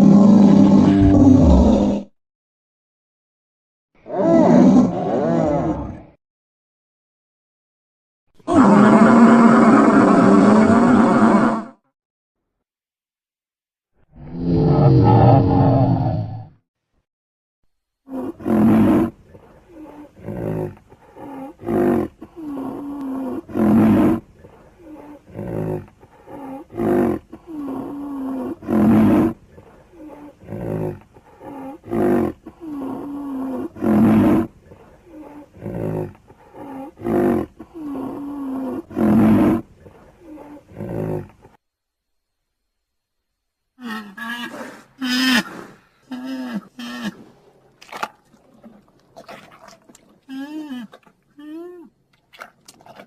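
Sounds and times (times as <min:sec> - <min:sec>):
monster roar: 0:00.0 - 0:02.1, 0:08.5 - 0:11.8, 0:14.2 - 0:16.5.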